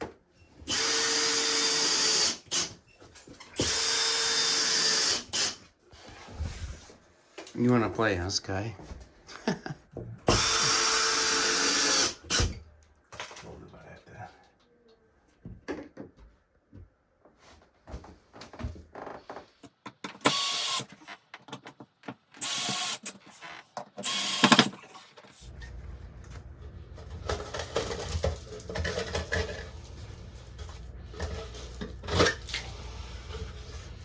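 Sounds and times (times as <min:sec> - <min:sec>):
power drill running: 0:00.7 - 0:02.7, 0:03.6 - 0:05.6, 0:10.3 - 0:12.5, 0:20.2 - 0:21.0, 0:22.4 - 0:24.8
steady low hum: 0:25.5 - 0:34.0.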